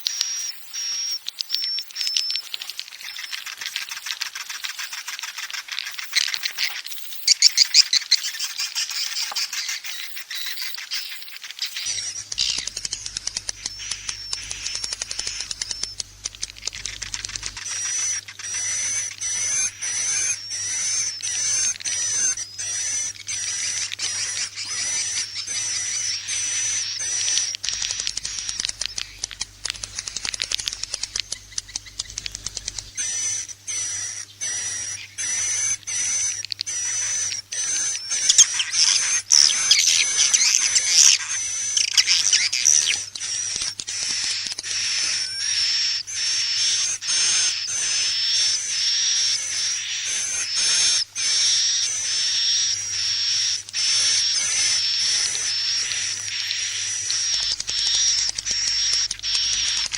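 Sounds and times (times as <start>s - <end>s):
swiftlet chattering clicks: 0.0s - 59.9s.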